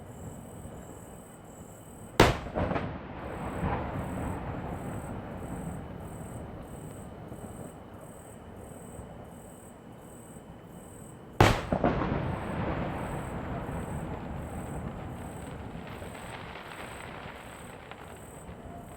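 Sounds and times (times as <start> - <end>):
fireworks boom: 2.2 - 5.5, 11.4 - 18.9
fireworks crackling: 2.2 - 6.0, 11.4 - 18.9.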